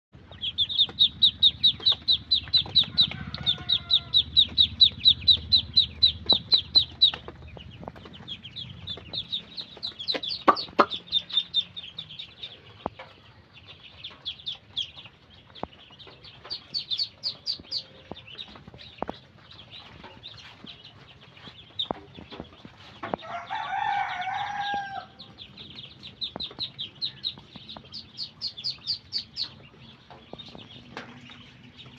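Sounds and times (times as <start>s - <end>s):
ducklings peeping: 0.2s - 31.9s.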